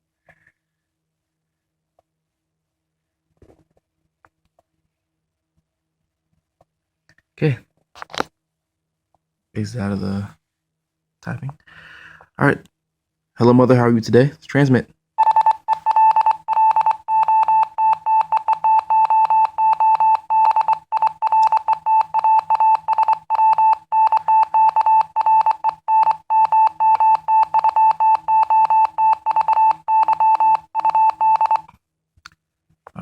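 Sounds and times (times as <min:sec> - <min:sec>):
morse code beeps: 0:15.2 - 0:31.7.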